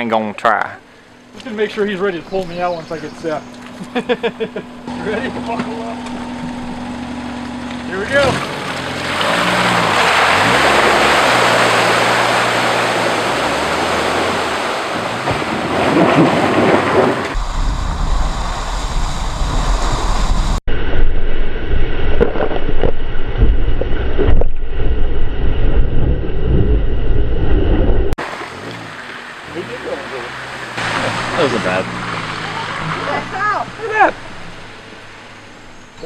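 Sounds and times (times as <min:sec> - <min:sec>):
tyres churning mud: 0:00.0 - 0:17.4, 0:28.2 - 0:36.0
mud and water splashing: 0:00.9 - 0:17.4, 0:28.2 - 0:36.0
car engine revving hard: 0:01.2 - 0:17.4, 0:28.2 - 0:35.9.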